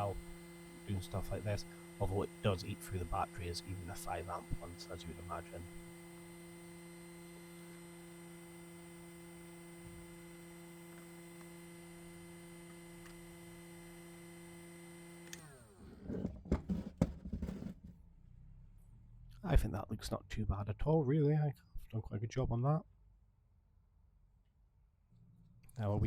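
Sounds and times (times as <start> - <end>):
heat gun whining: 0.0 - 17.9
handling knocks and clicks: 15.9 - 18.0.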